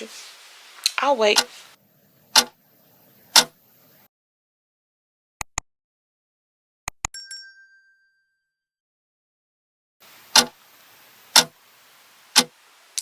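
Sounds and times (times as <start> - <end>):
sharp clicks: 2.3 - 2.6, 3.3 - 3.6, 10.3 - 10.6, 11.3 - 11.5
bright bell ding: 7.2 - 8.5.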